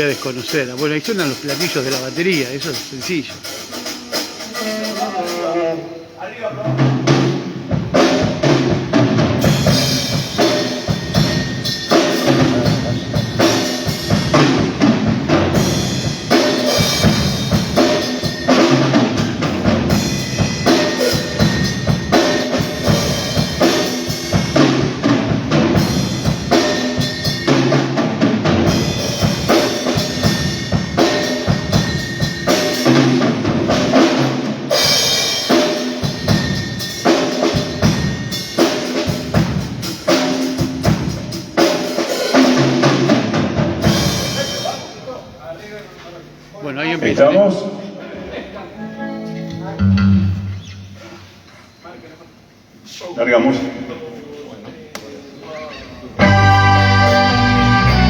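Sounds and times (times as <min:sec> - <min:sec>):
drum kit playing a beat: 0:00.0 - 0:05.8, 0:06.5 - 0:45.1, 0:56.2 - 0:58.0
sustained instrument notes: 0:56.2 - 0:58.0.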